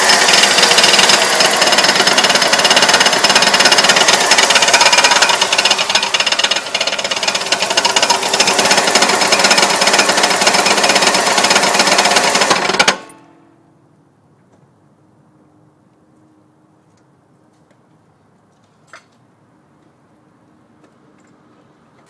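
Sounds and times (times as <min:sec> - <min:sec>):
car engine running: 0:00.0 - 0:13.2
rapid engine knocking: 0:00.0 - 0:13.2.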